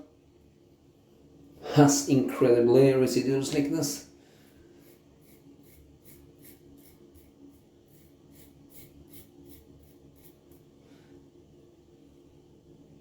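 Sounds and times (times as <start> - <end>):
razor scraping stubble: 4.5 - 10.6.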